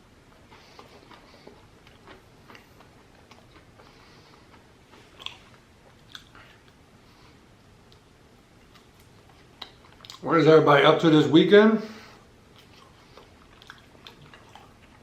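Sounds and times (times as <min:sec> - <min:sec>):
chewing crunchy food: 0:00.3 - 0:06.9, 0:07.9 - 0:10.3, 0:12.2 - 0:15.0.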